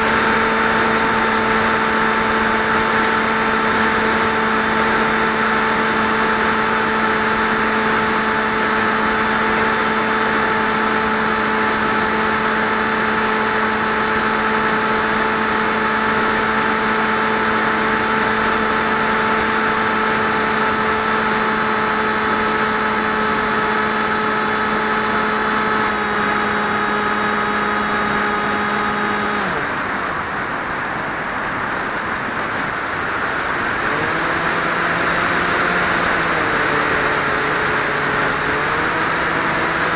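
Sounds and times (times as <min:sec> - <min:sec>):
electric motor and propeller drone: 0:00.0 - 0:30.9, 0:31.7 - 0:39.9
rushing wind: 0:29.2 - 0:39.9.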